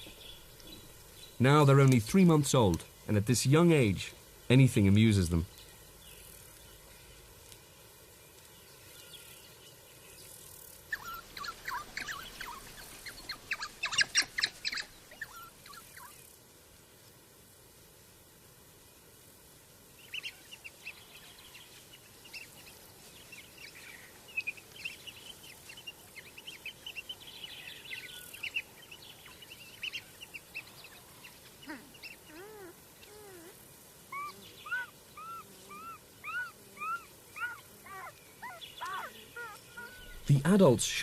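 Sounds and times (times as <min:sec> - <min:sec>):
wild dogs chirping and squeaking: 0:10.9 - 0:16.2, 0:29.2 - 0:40.6.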